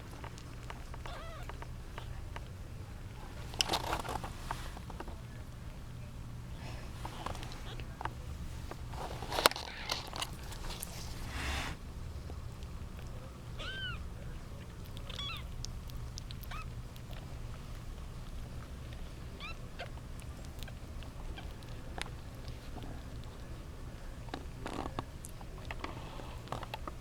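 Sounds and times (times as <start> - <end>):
rustling: 0.0 - 11.8, 14.6 - 27.0
kittens mewing: 1.0 - 2.2, 13.6 - 14.1, 14.9 - 15.6, 16.2 - 17.3.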